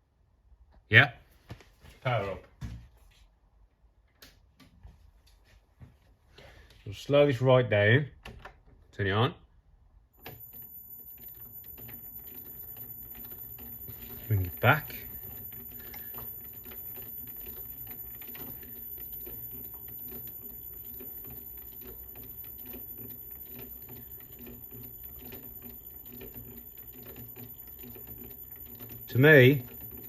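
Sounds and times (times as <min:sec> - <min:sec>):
lathe humming: 0:10.3 - 0:30.0.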